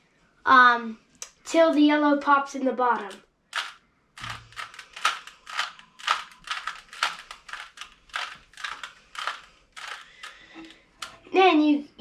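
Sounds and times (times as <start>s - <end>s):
puzzle cube clicking as turned: 3.0s - 11.2s.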